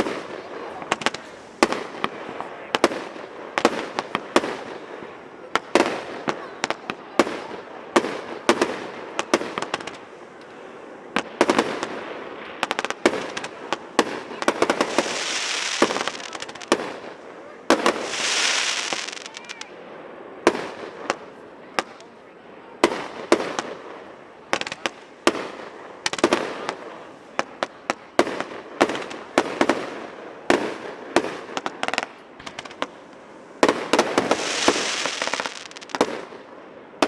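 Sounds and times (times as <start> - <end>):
firework hiss: 0.0 - 10.4, 11.2 - 22.0, 22.8 - 36.6
firework bangs: 0.0 - 37.0.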